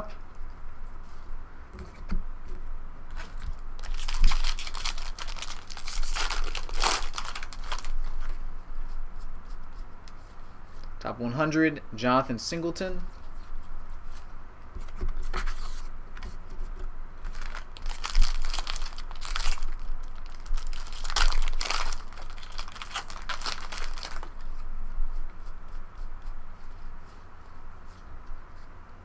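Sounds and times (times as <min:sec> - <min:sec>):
card pack wrapper tearing and crinkling: 0:03.2 - 0:08.2, 0:17.3 - 0:24.4.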